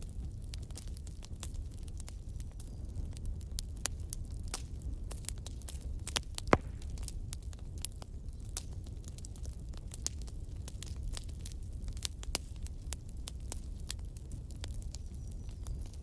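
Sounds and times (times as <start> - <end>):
wood fire crackling and popping: 0.0 - 16.0
steady low rumble: 5.8 - 7.7.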